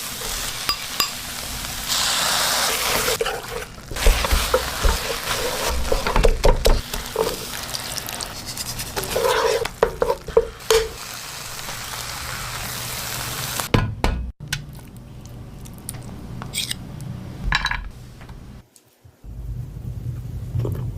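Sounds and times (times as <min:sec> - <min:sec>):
food sizzling in a pan: 0:00.0 - 0:13.7
spatula scraping a pan: 0:02.8 - 0:11.0.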